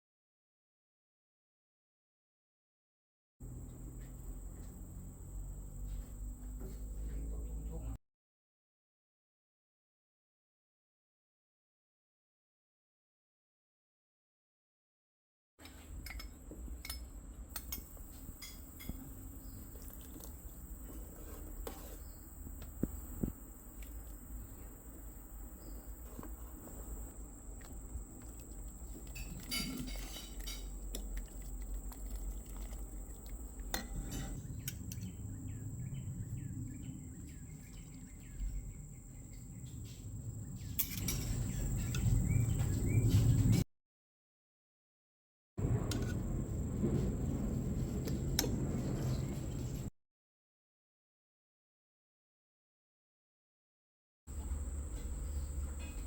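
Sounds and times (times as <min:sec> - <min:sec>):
utensils clinking on cookware: 0:15.6 - 0:19.2, 0:29.0 - 0:31.6, 0:33.7 - 0:34.8, 0:40.8 - 0:42.1
steady low rumble: 0:45.6 - 0:49.9.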